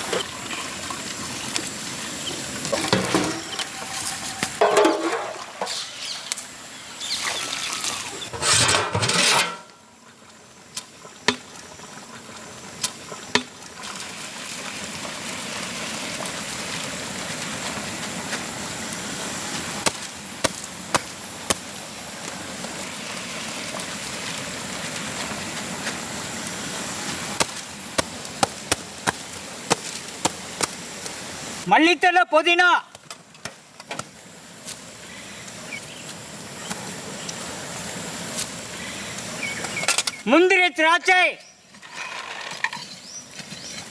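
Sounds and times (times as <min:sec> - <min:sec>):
splashing into pot: 0:04.4 - 0:05.9
pot cooking hiss with clicks: 0:04.4 - 0:06.5, 0:09.6 - 0:31.6, 0:32.9 - 0:40.5.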